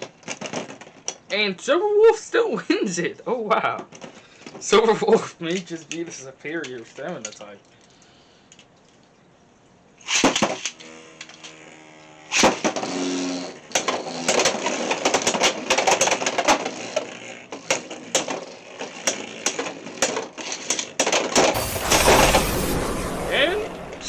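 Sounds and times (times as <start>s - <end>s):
spinning tops whirring: 10.0s - 24.0s.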